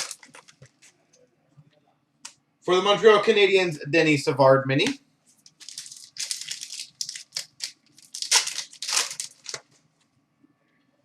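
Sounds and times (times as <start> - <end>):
card packs crinkling: 0.0 - 0.9, 5.4 - 9.8.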